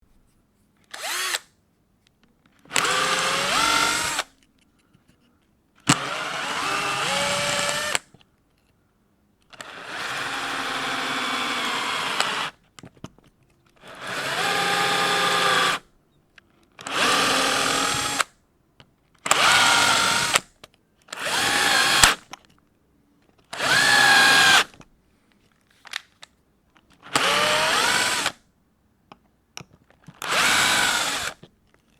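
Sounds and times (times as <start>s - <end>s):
power drill driving screws into wood: 0.9s - 1.5s, 2.7s - 4.3s, 5.8s - 8.1s, 9.6s - 12.6s, 13.9s - 15.8s, 16.8s - 18.3s, 19.3s - 20.5s, 21.1s - 22.2s, 23.5s - 24.8s, 27.0s - 28.4s, 30.2s - 31.5s.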